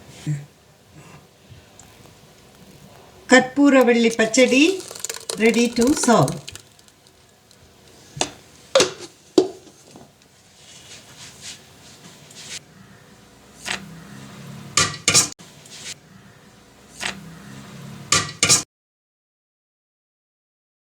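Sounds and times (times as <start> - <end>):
dishes and spoon clinking: 3.8 - 7.5.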